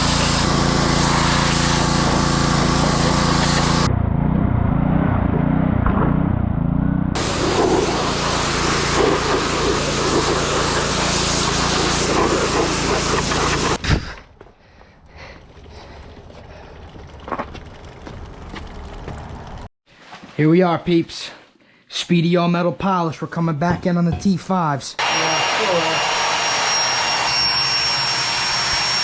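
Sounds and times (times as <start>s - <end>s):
high-pressure water spray hissing: 0.0s - 3.9s, 7.2s - 13.8s
pressure washer engine droning: 0.0s - 13.8s, 15.2s - 19.7s, 25.0s - 29.0s.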